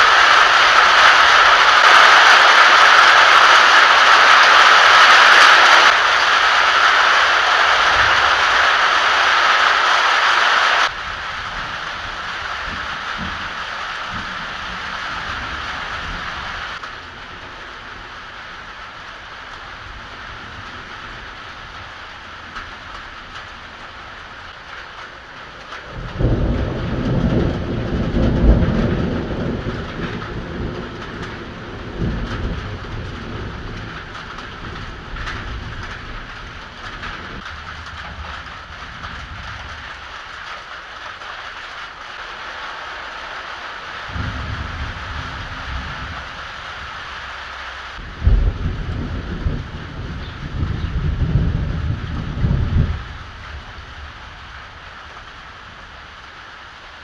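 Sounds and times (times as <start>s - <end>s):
heavy rain: 0.0s - 57.0s
rolling thunder rumble: 10.8s - 42.0s, 43.9s - 57.0s.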